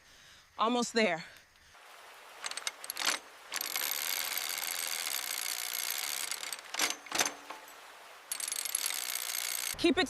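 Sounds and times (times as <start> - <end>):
loud mechanical rattle: 2.4 - 7.7, 8.3 - 9.8.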